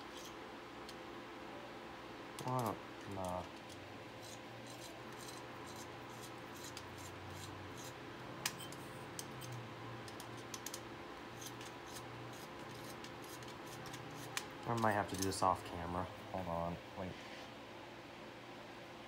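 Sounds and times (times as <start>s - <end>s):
low room hum: 0.0s - 19.0s
clicks of computer parts: 8.4s - 10.8s.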